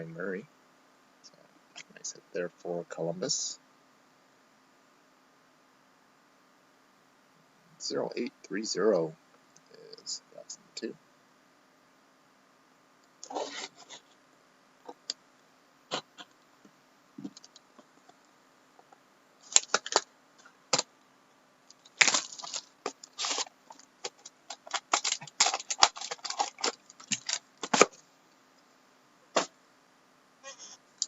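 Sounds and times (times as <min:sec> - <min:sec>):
card packaging crinkling: 0:19.4 - 0:20.1, 0:21.7 - 0:28.0.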